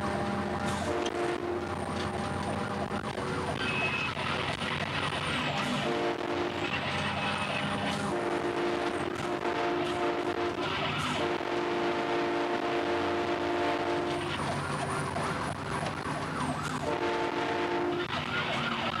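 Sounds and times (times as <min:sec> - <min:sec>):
train horn chord blasts: 0:00.0 - 0:02.8, 0:03.6 - 0:14.4, 0:16.8 - 0:18.2
siren: 0:00.0 - 0:19.0
truck road noise: 0:00.0 - 0:19.0.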